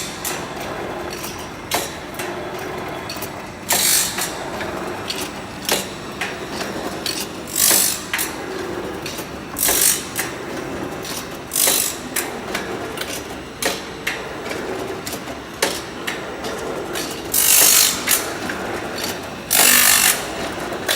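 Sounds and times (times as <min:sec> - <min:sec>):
feed mechanism clicks: 0:00.0 - 0:20.9
grinding hiss of saw grinder: 0:19.5 - 0:20.2.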